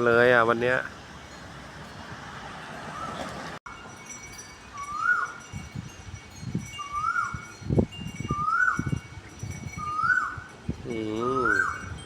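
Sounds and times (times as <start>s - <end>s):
wind on microphone: 4.2s - 12.0s
bird calling: 4.7s - 5.4s, 6.8s - 7.5s, 8.3s - 8.9s, 9.8s - 10.5s, 11.2s - 11.9s.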